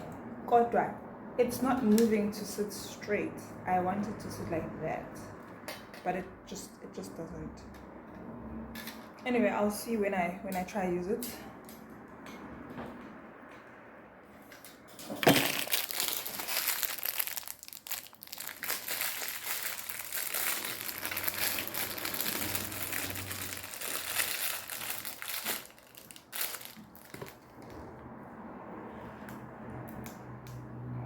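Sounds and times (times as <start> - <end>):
packaging crinkling and rustling: 15.1 - 27.8.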